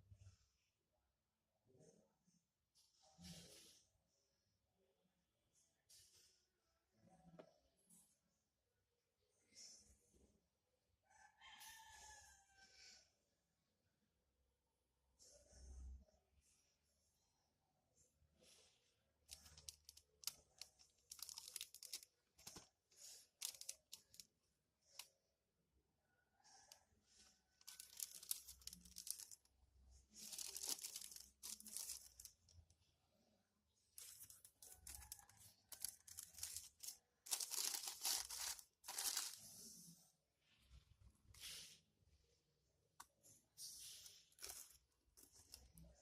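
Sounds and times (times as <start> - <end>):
packaging crinkling and rustling: 19.3 - 25.1, 27.6 - 32.6, 34.0 - 39.5, 44.2 - 45.9.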